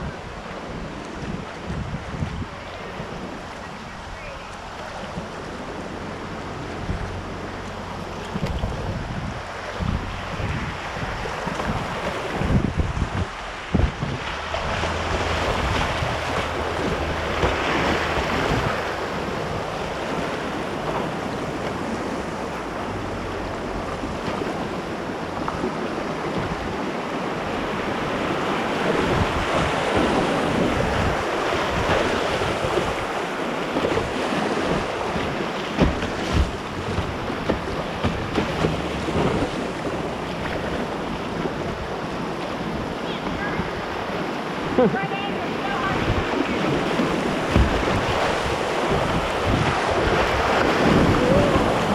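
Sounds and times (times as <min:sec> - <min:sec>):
whitewater rapids rushing: 0:00.0 - 0:51.9
wind buffeting microphone: 0:00.0 - 0:51.9
low thumps: 0:11.5 - 0:24.6, 0:34.7 - 0:41.9, 0:47.3 - 0:51.9.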